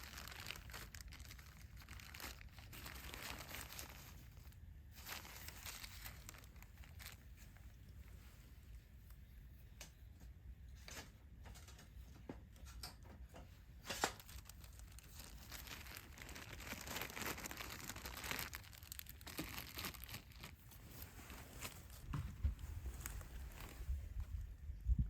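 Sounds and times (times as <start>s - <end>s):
crinkling and tearing: 0.0s - 8.3s, 13.8s - 24.5s.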